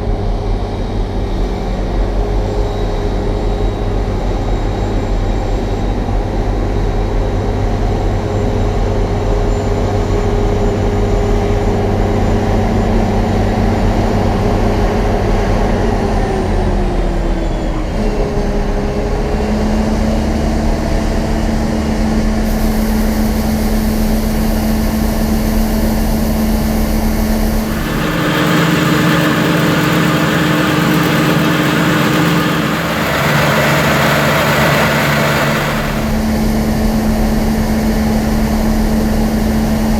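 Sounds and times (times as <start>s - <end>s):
loud hissy machine noise: 27.5s - 36.5s
combine harvester engine and threshing: 27.6s - 36.4s.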